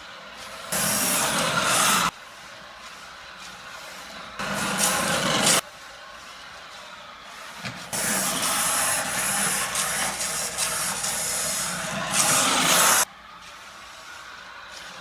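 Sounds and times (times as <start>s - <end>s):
toy car motor whirring: 7.9s - 13.1s.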